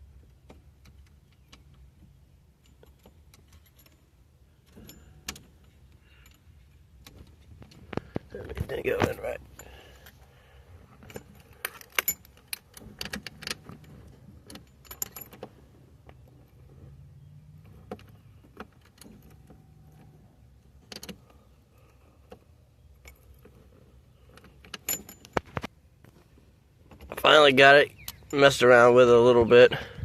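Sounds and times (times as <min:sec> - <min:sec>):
key clicking in ignition lock: 0:11.0 - 0:15.5
keys jangling: 0:24.7 - 0:25.6.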